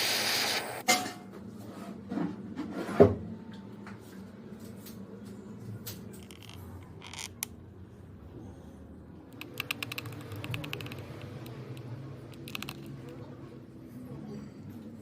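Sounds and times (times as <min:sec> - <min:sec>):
padlock clicking and rattling: 0:09.4 - 0:13.2.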